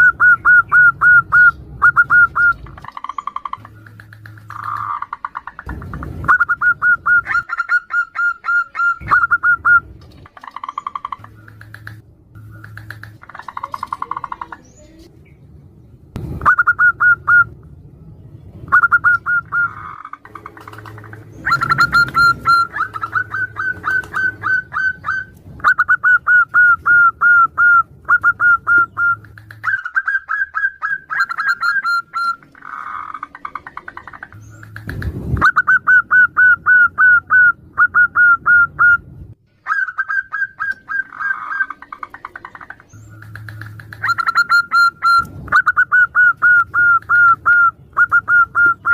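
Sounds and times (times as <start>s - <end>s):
doves cooing: 0.0s - 15.1s, 18.7s - 48.9s.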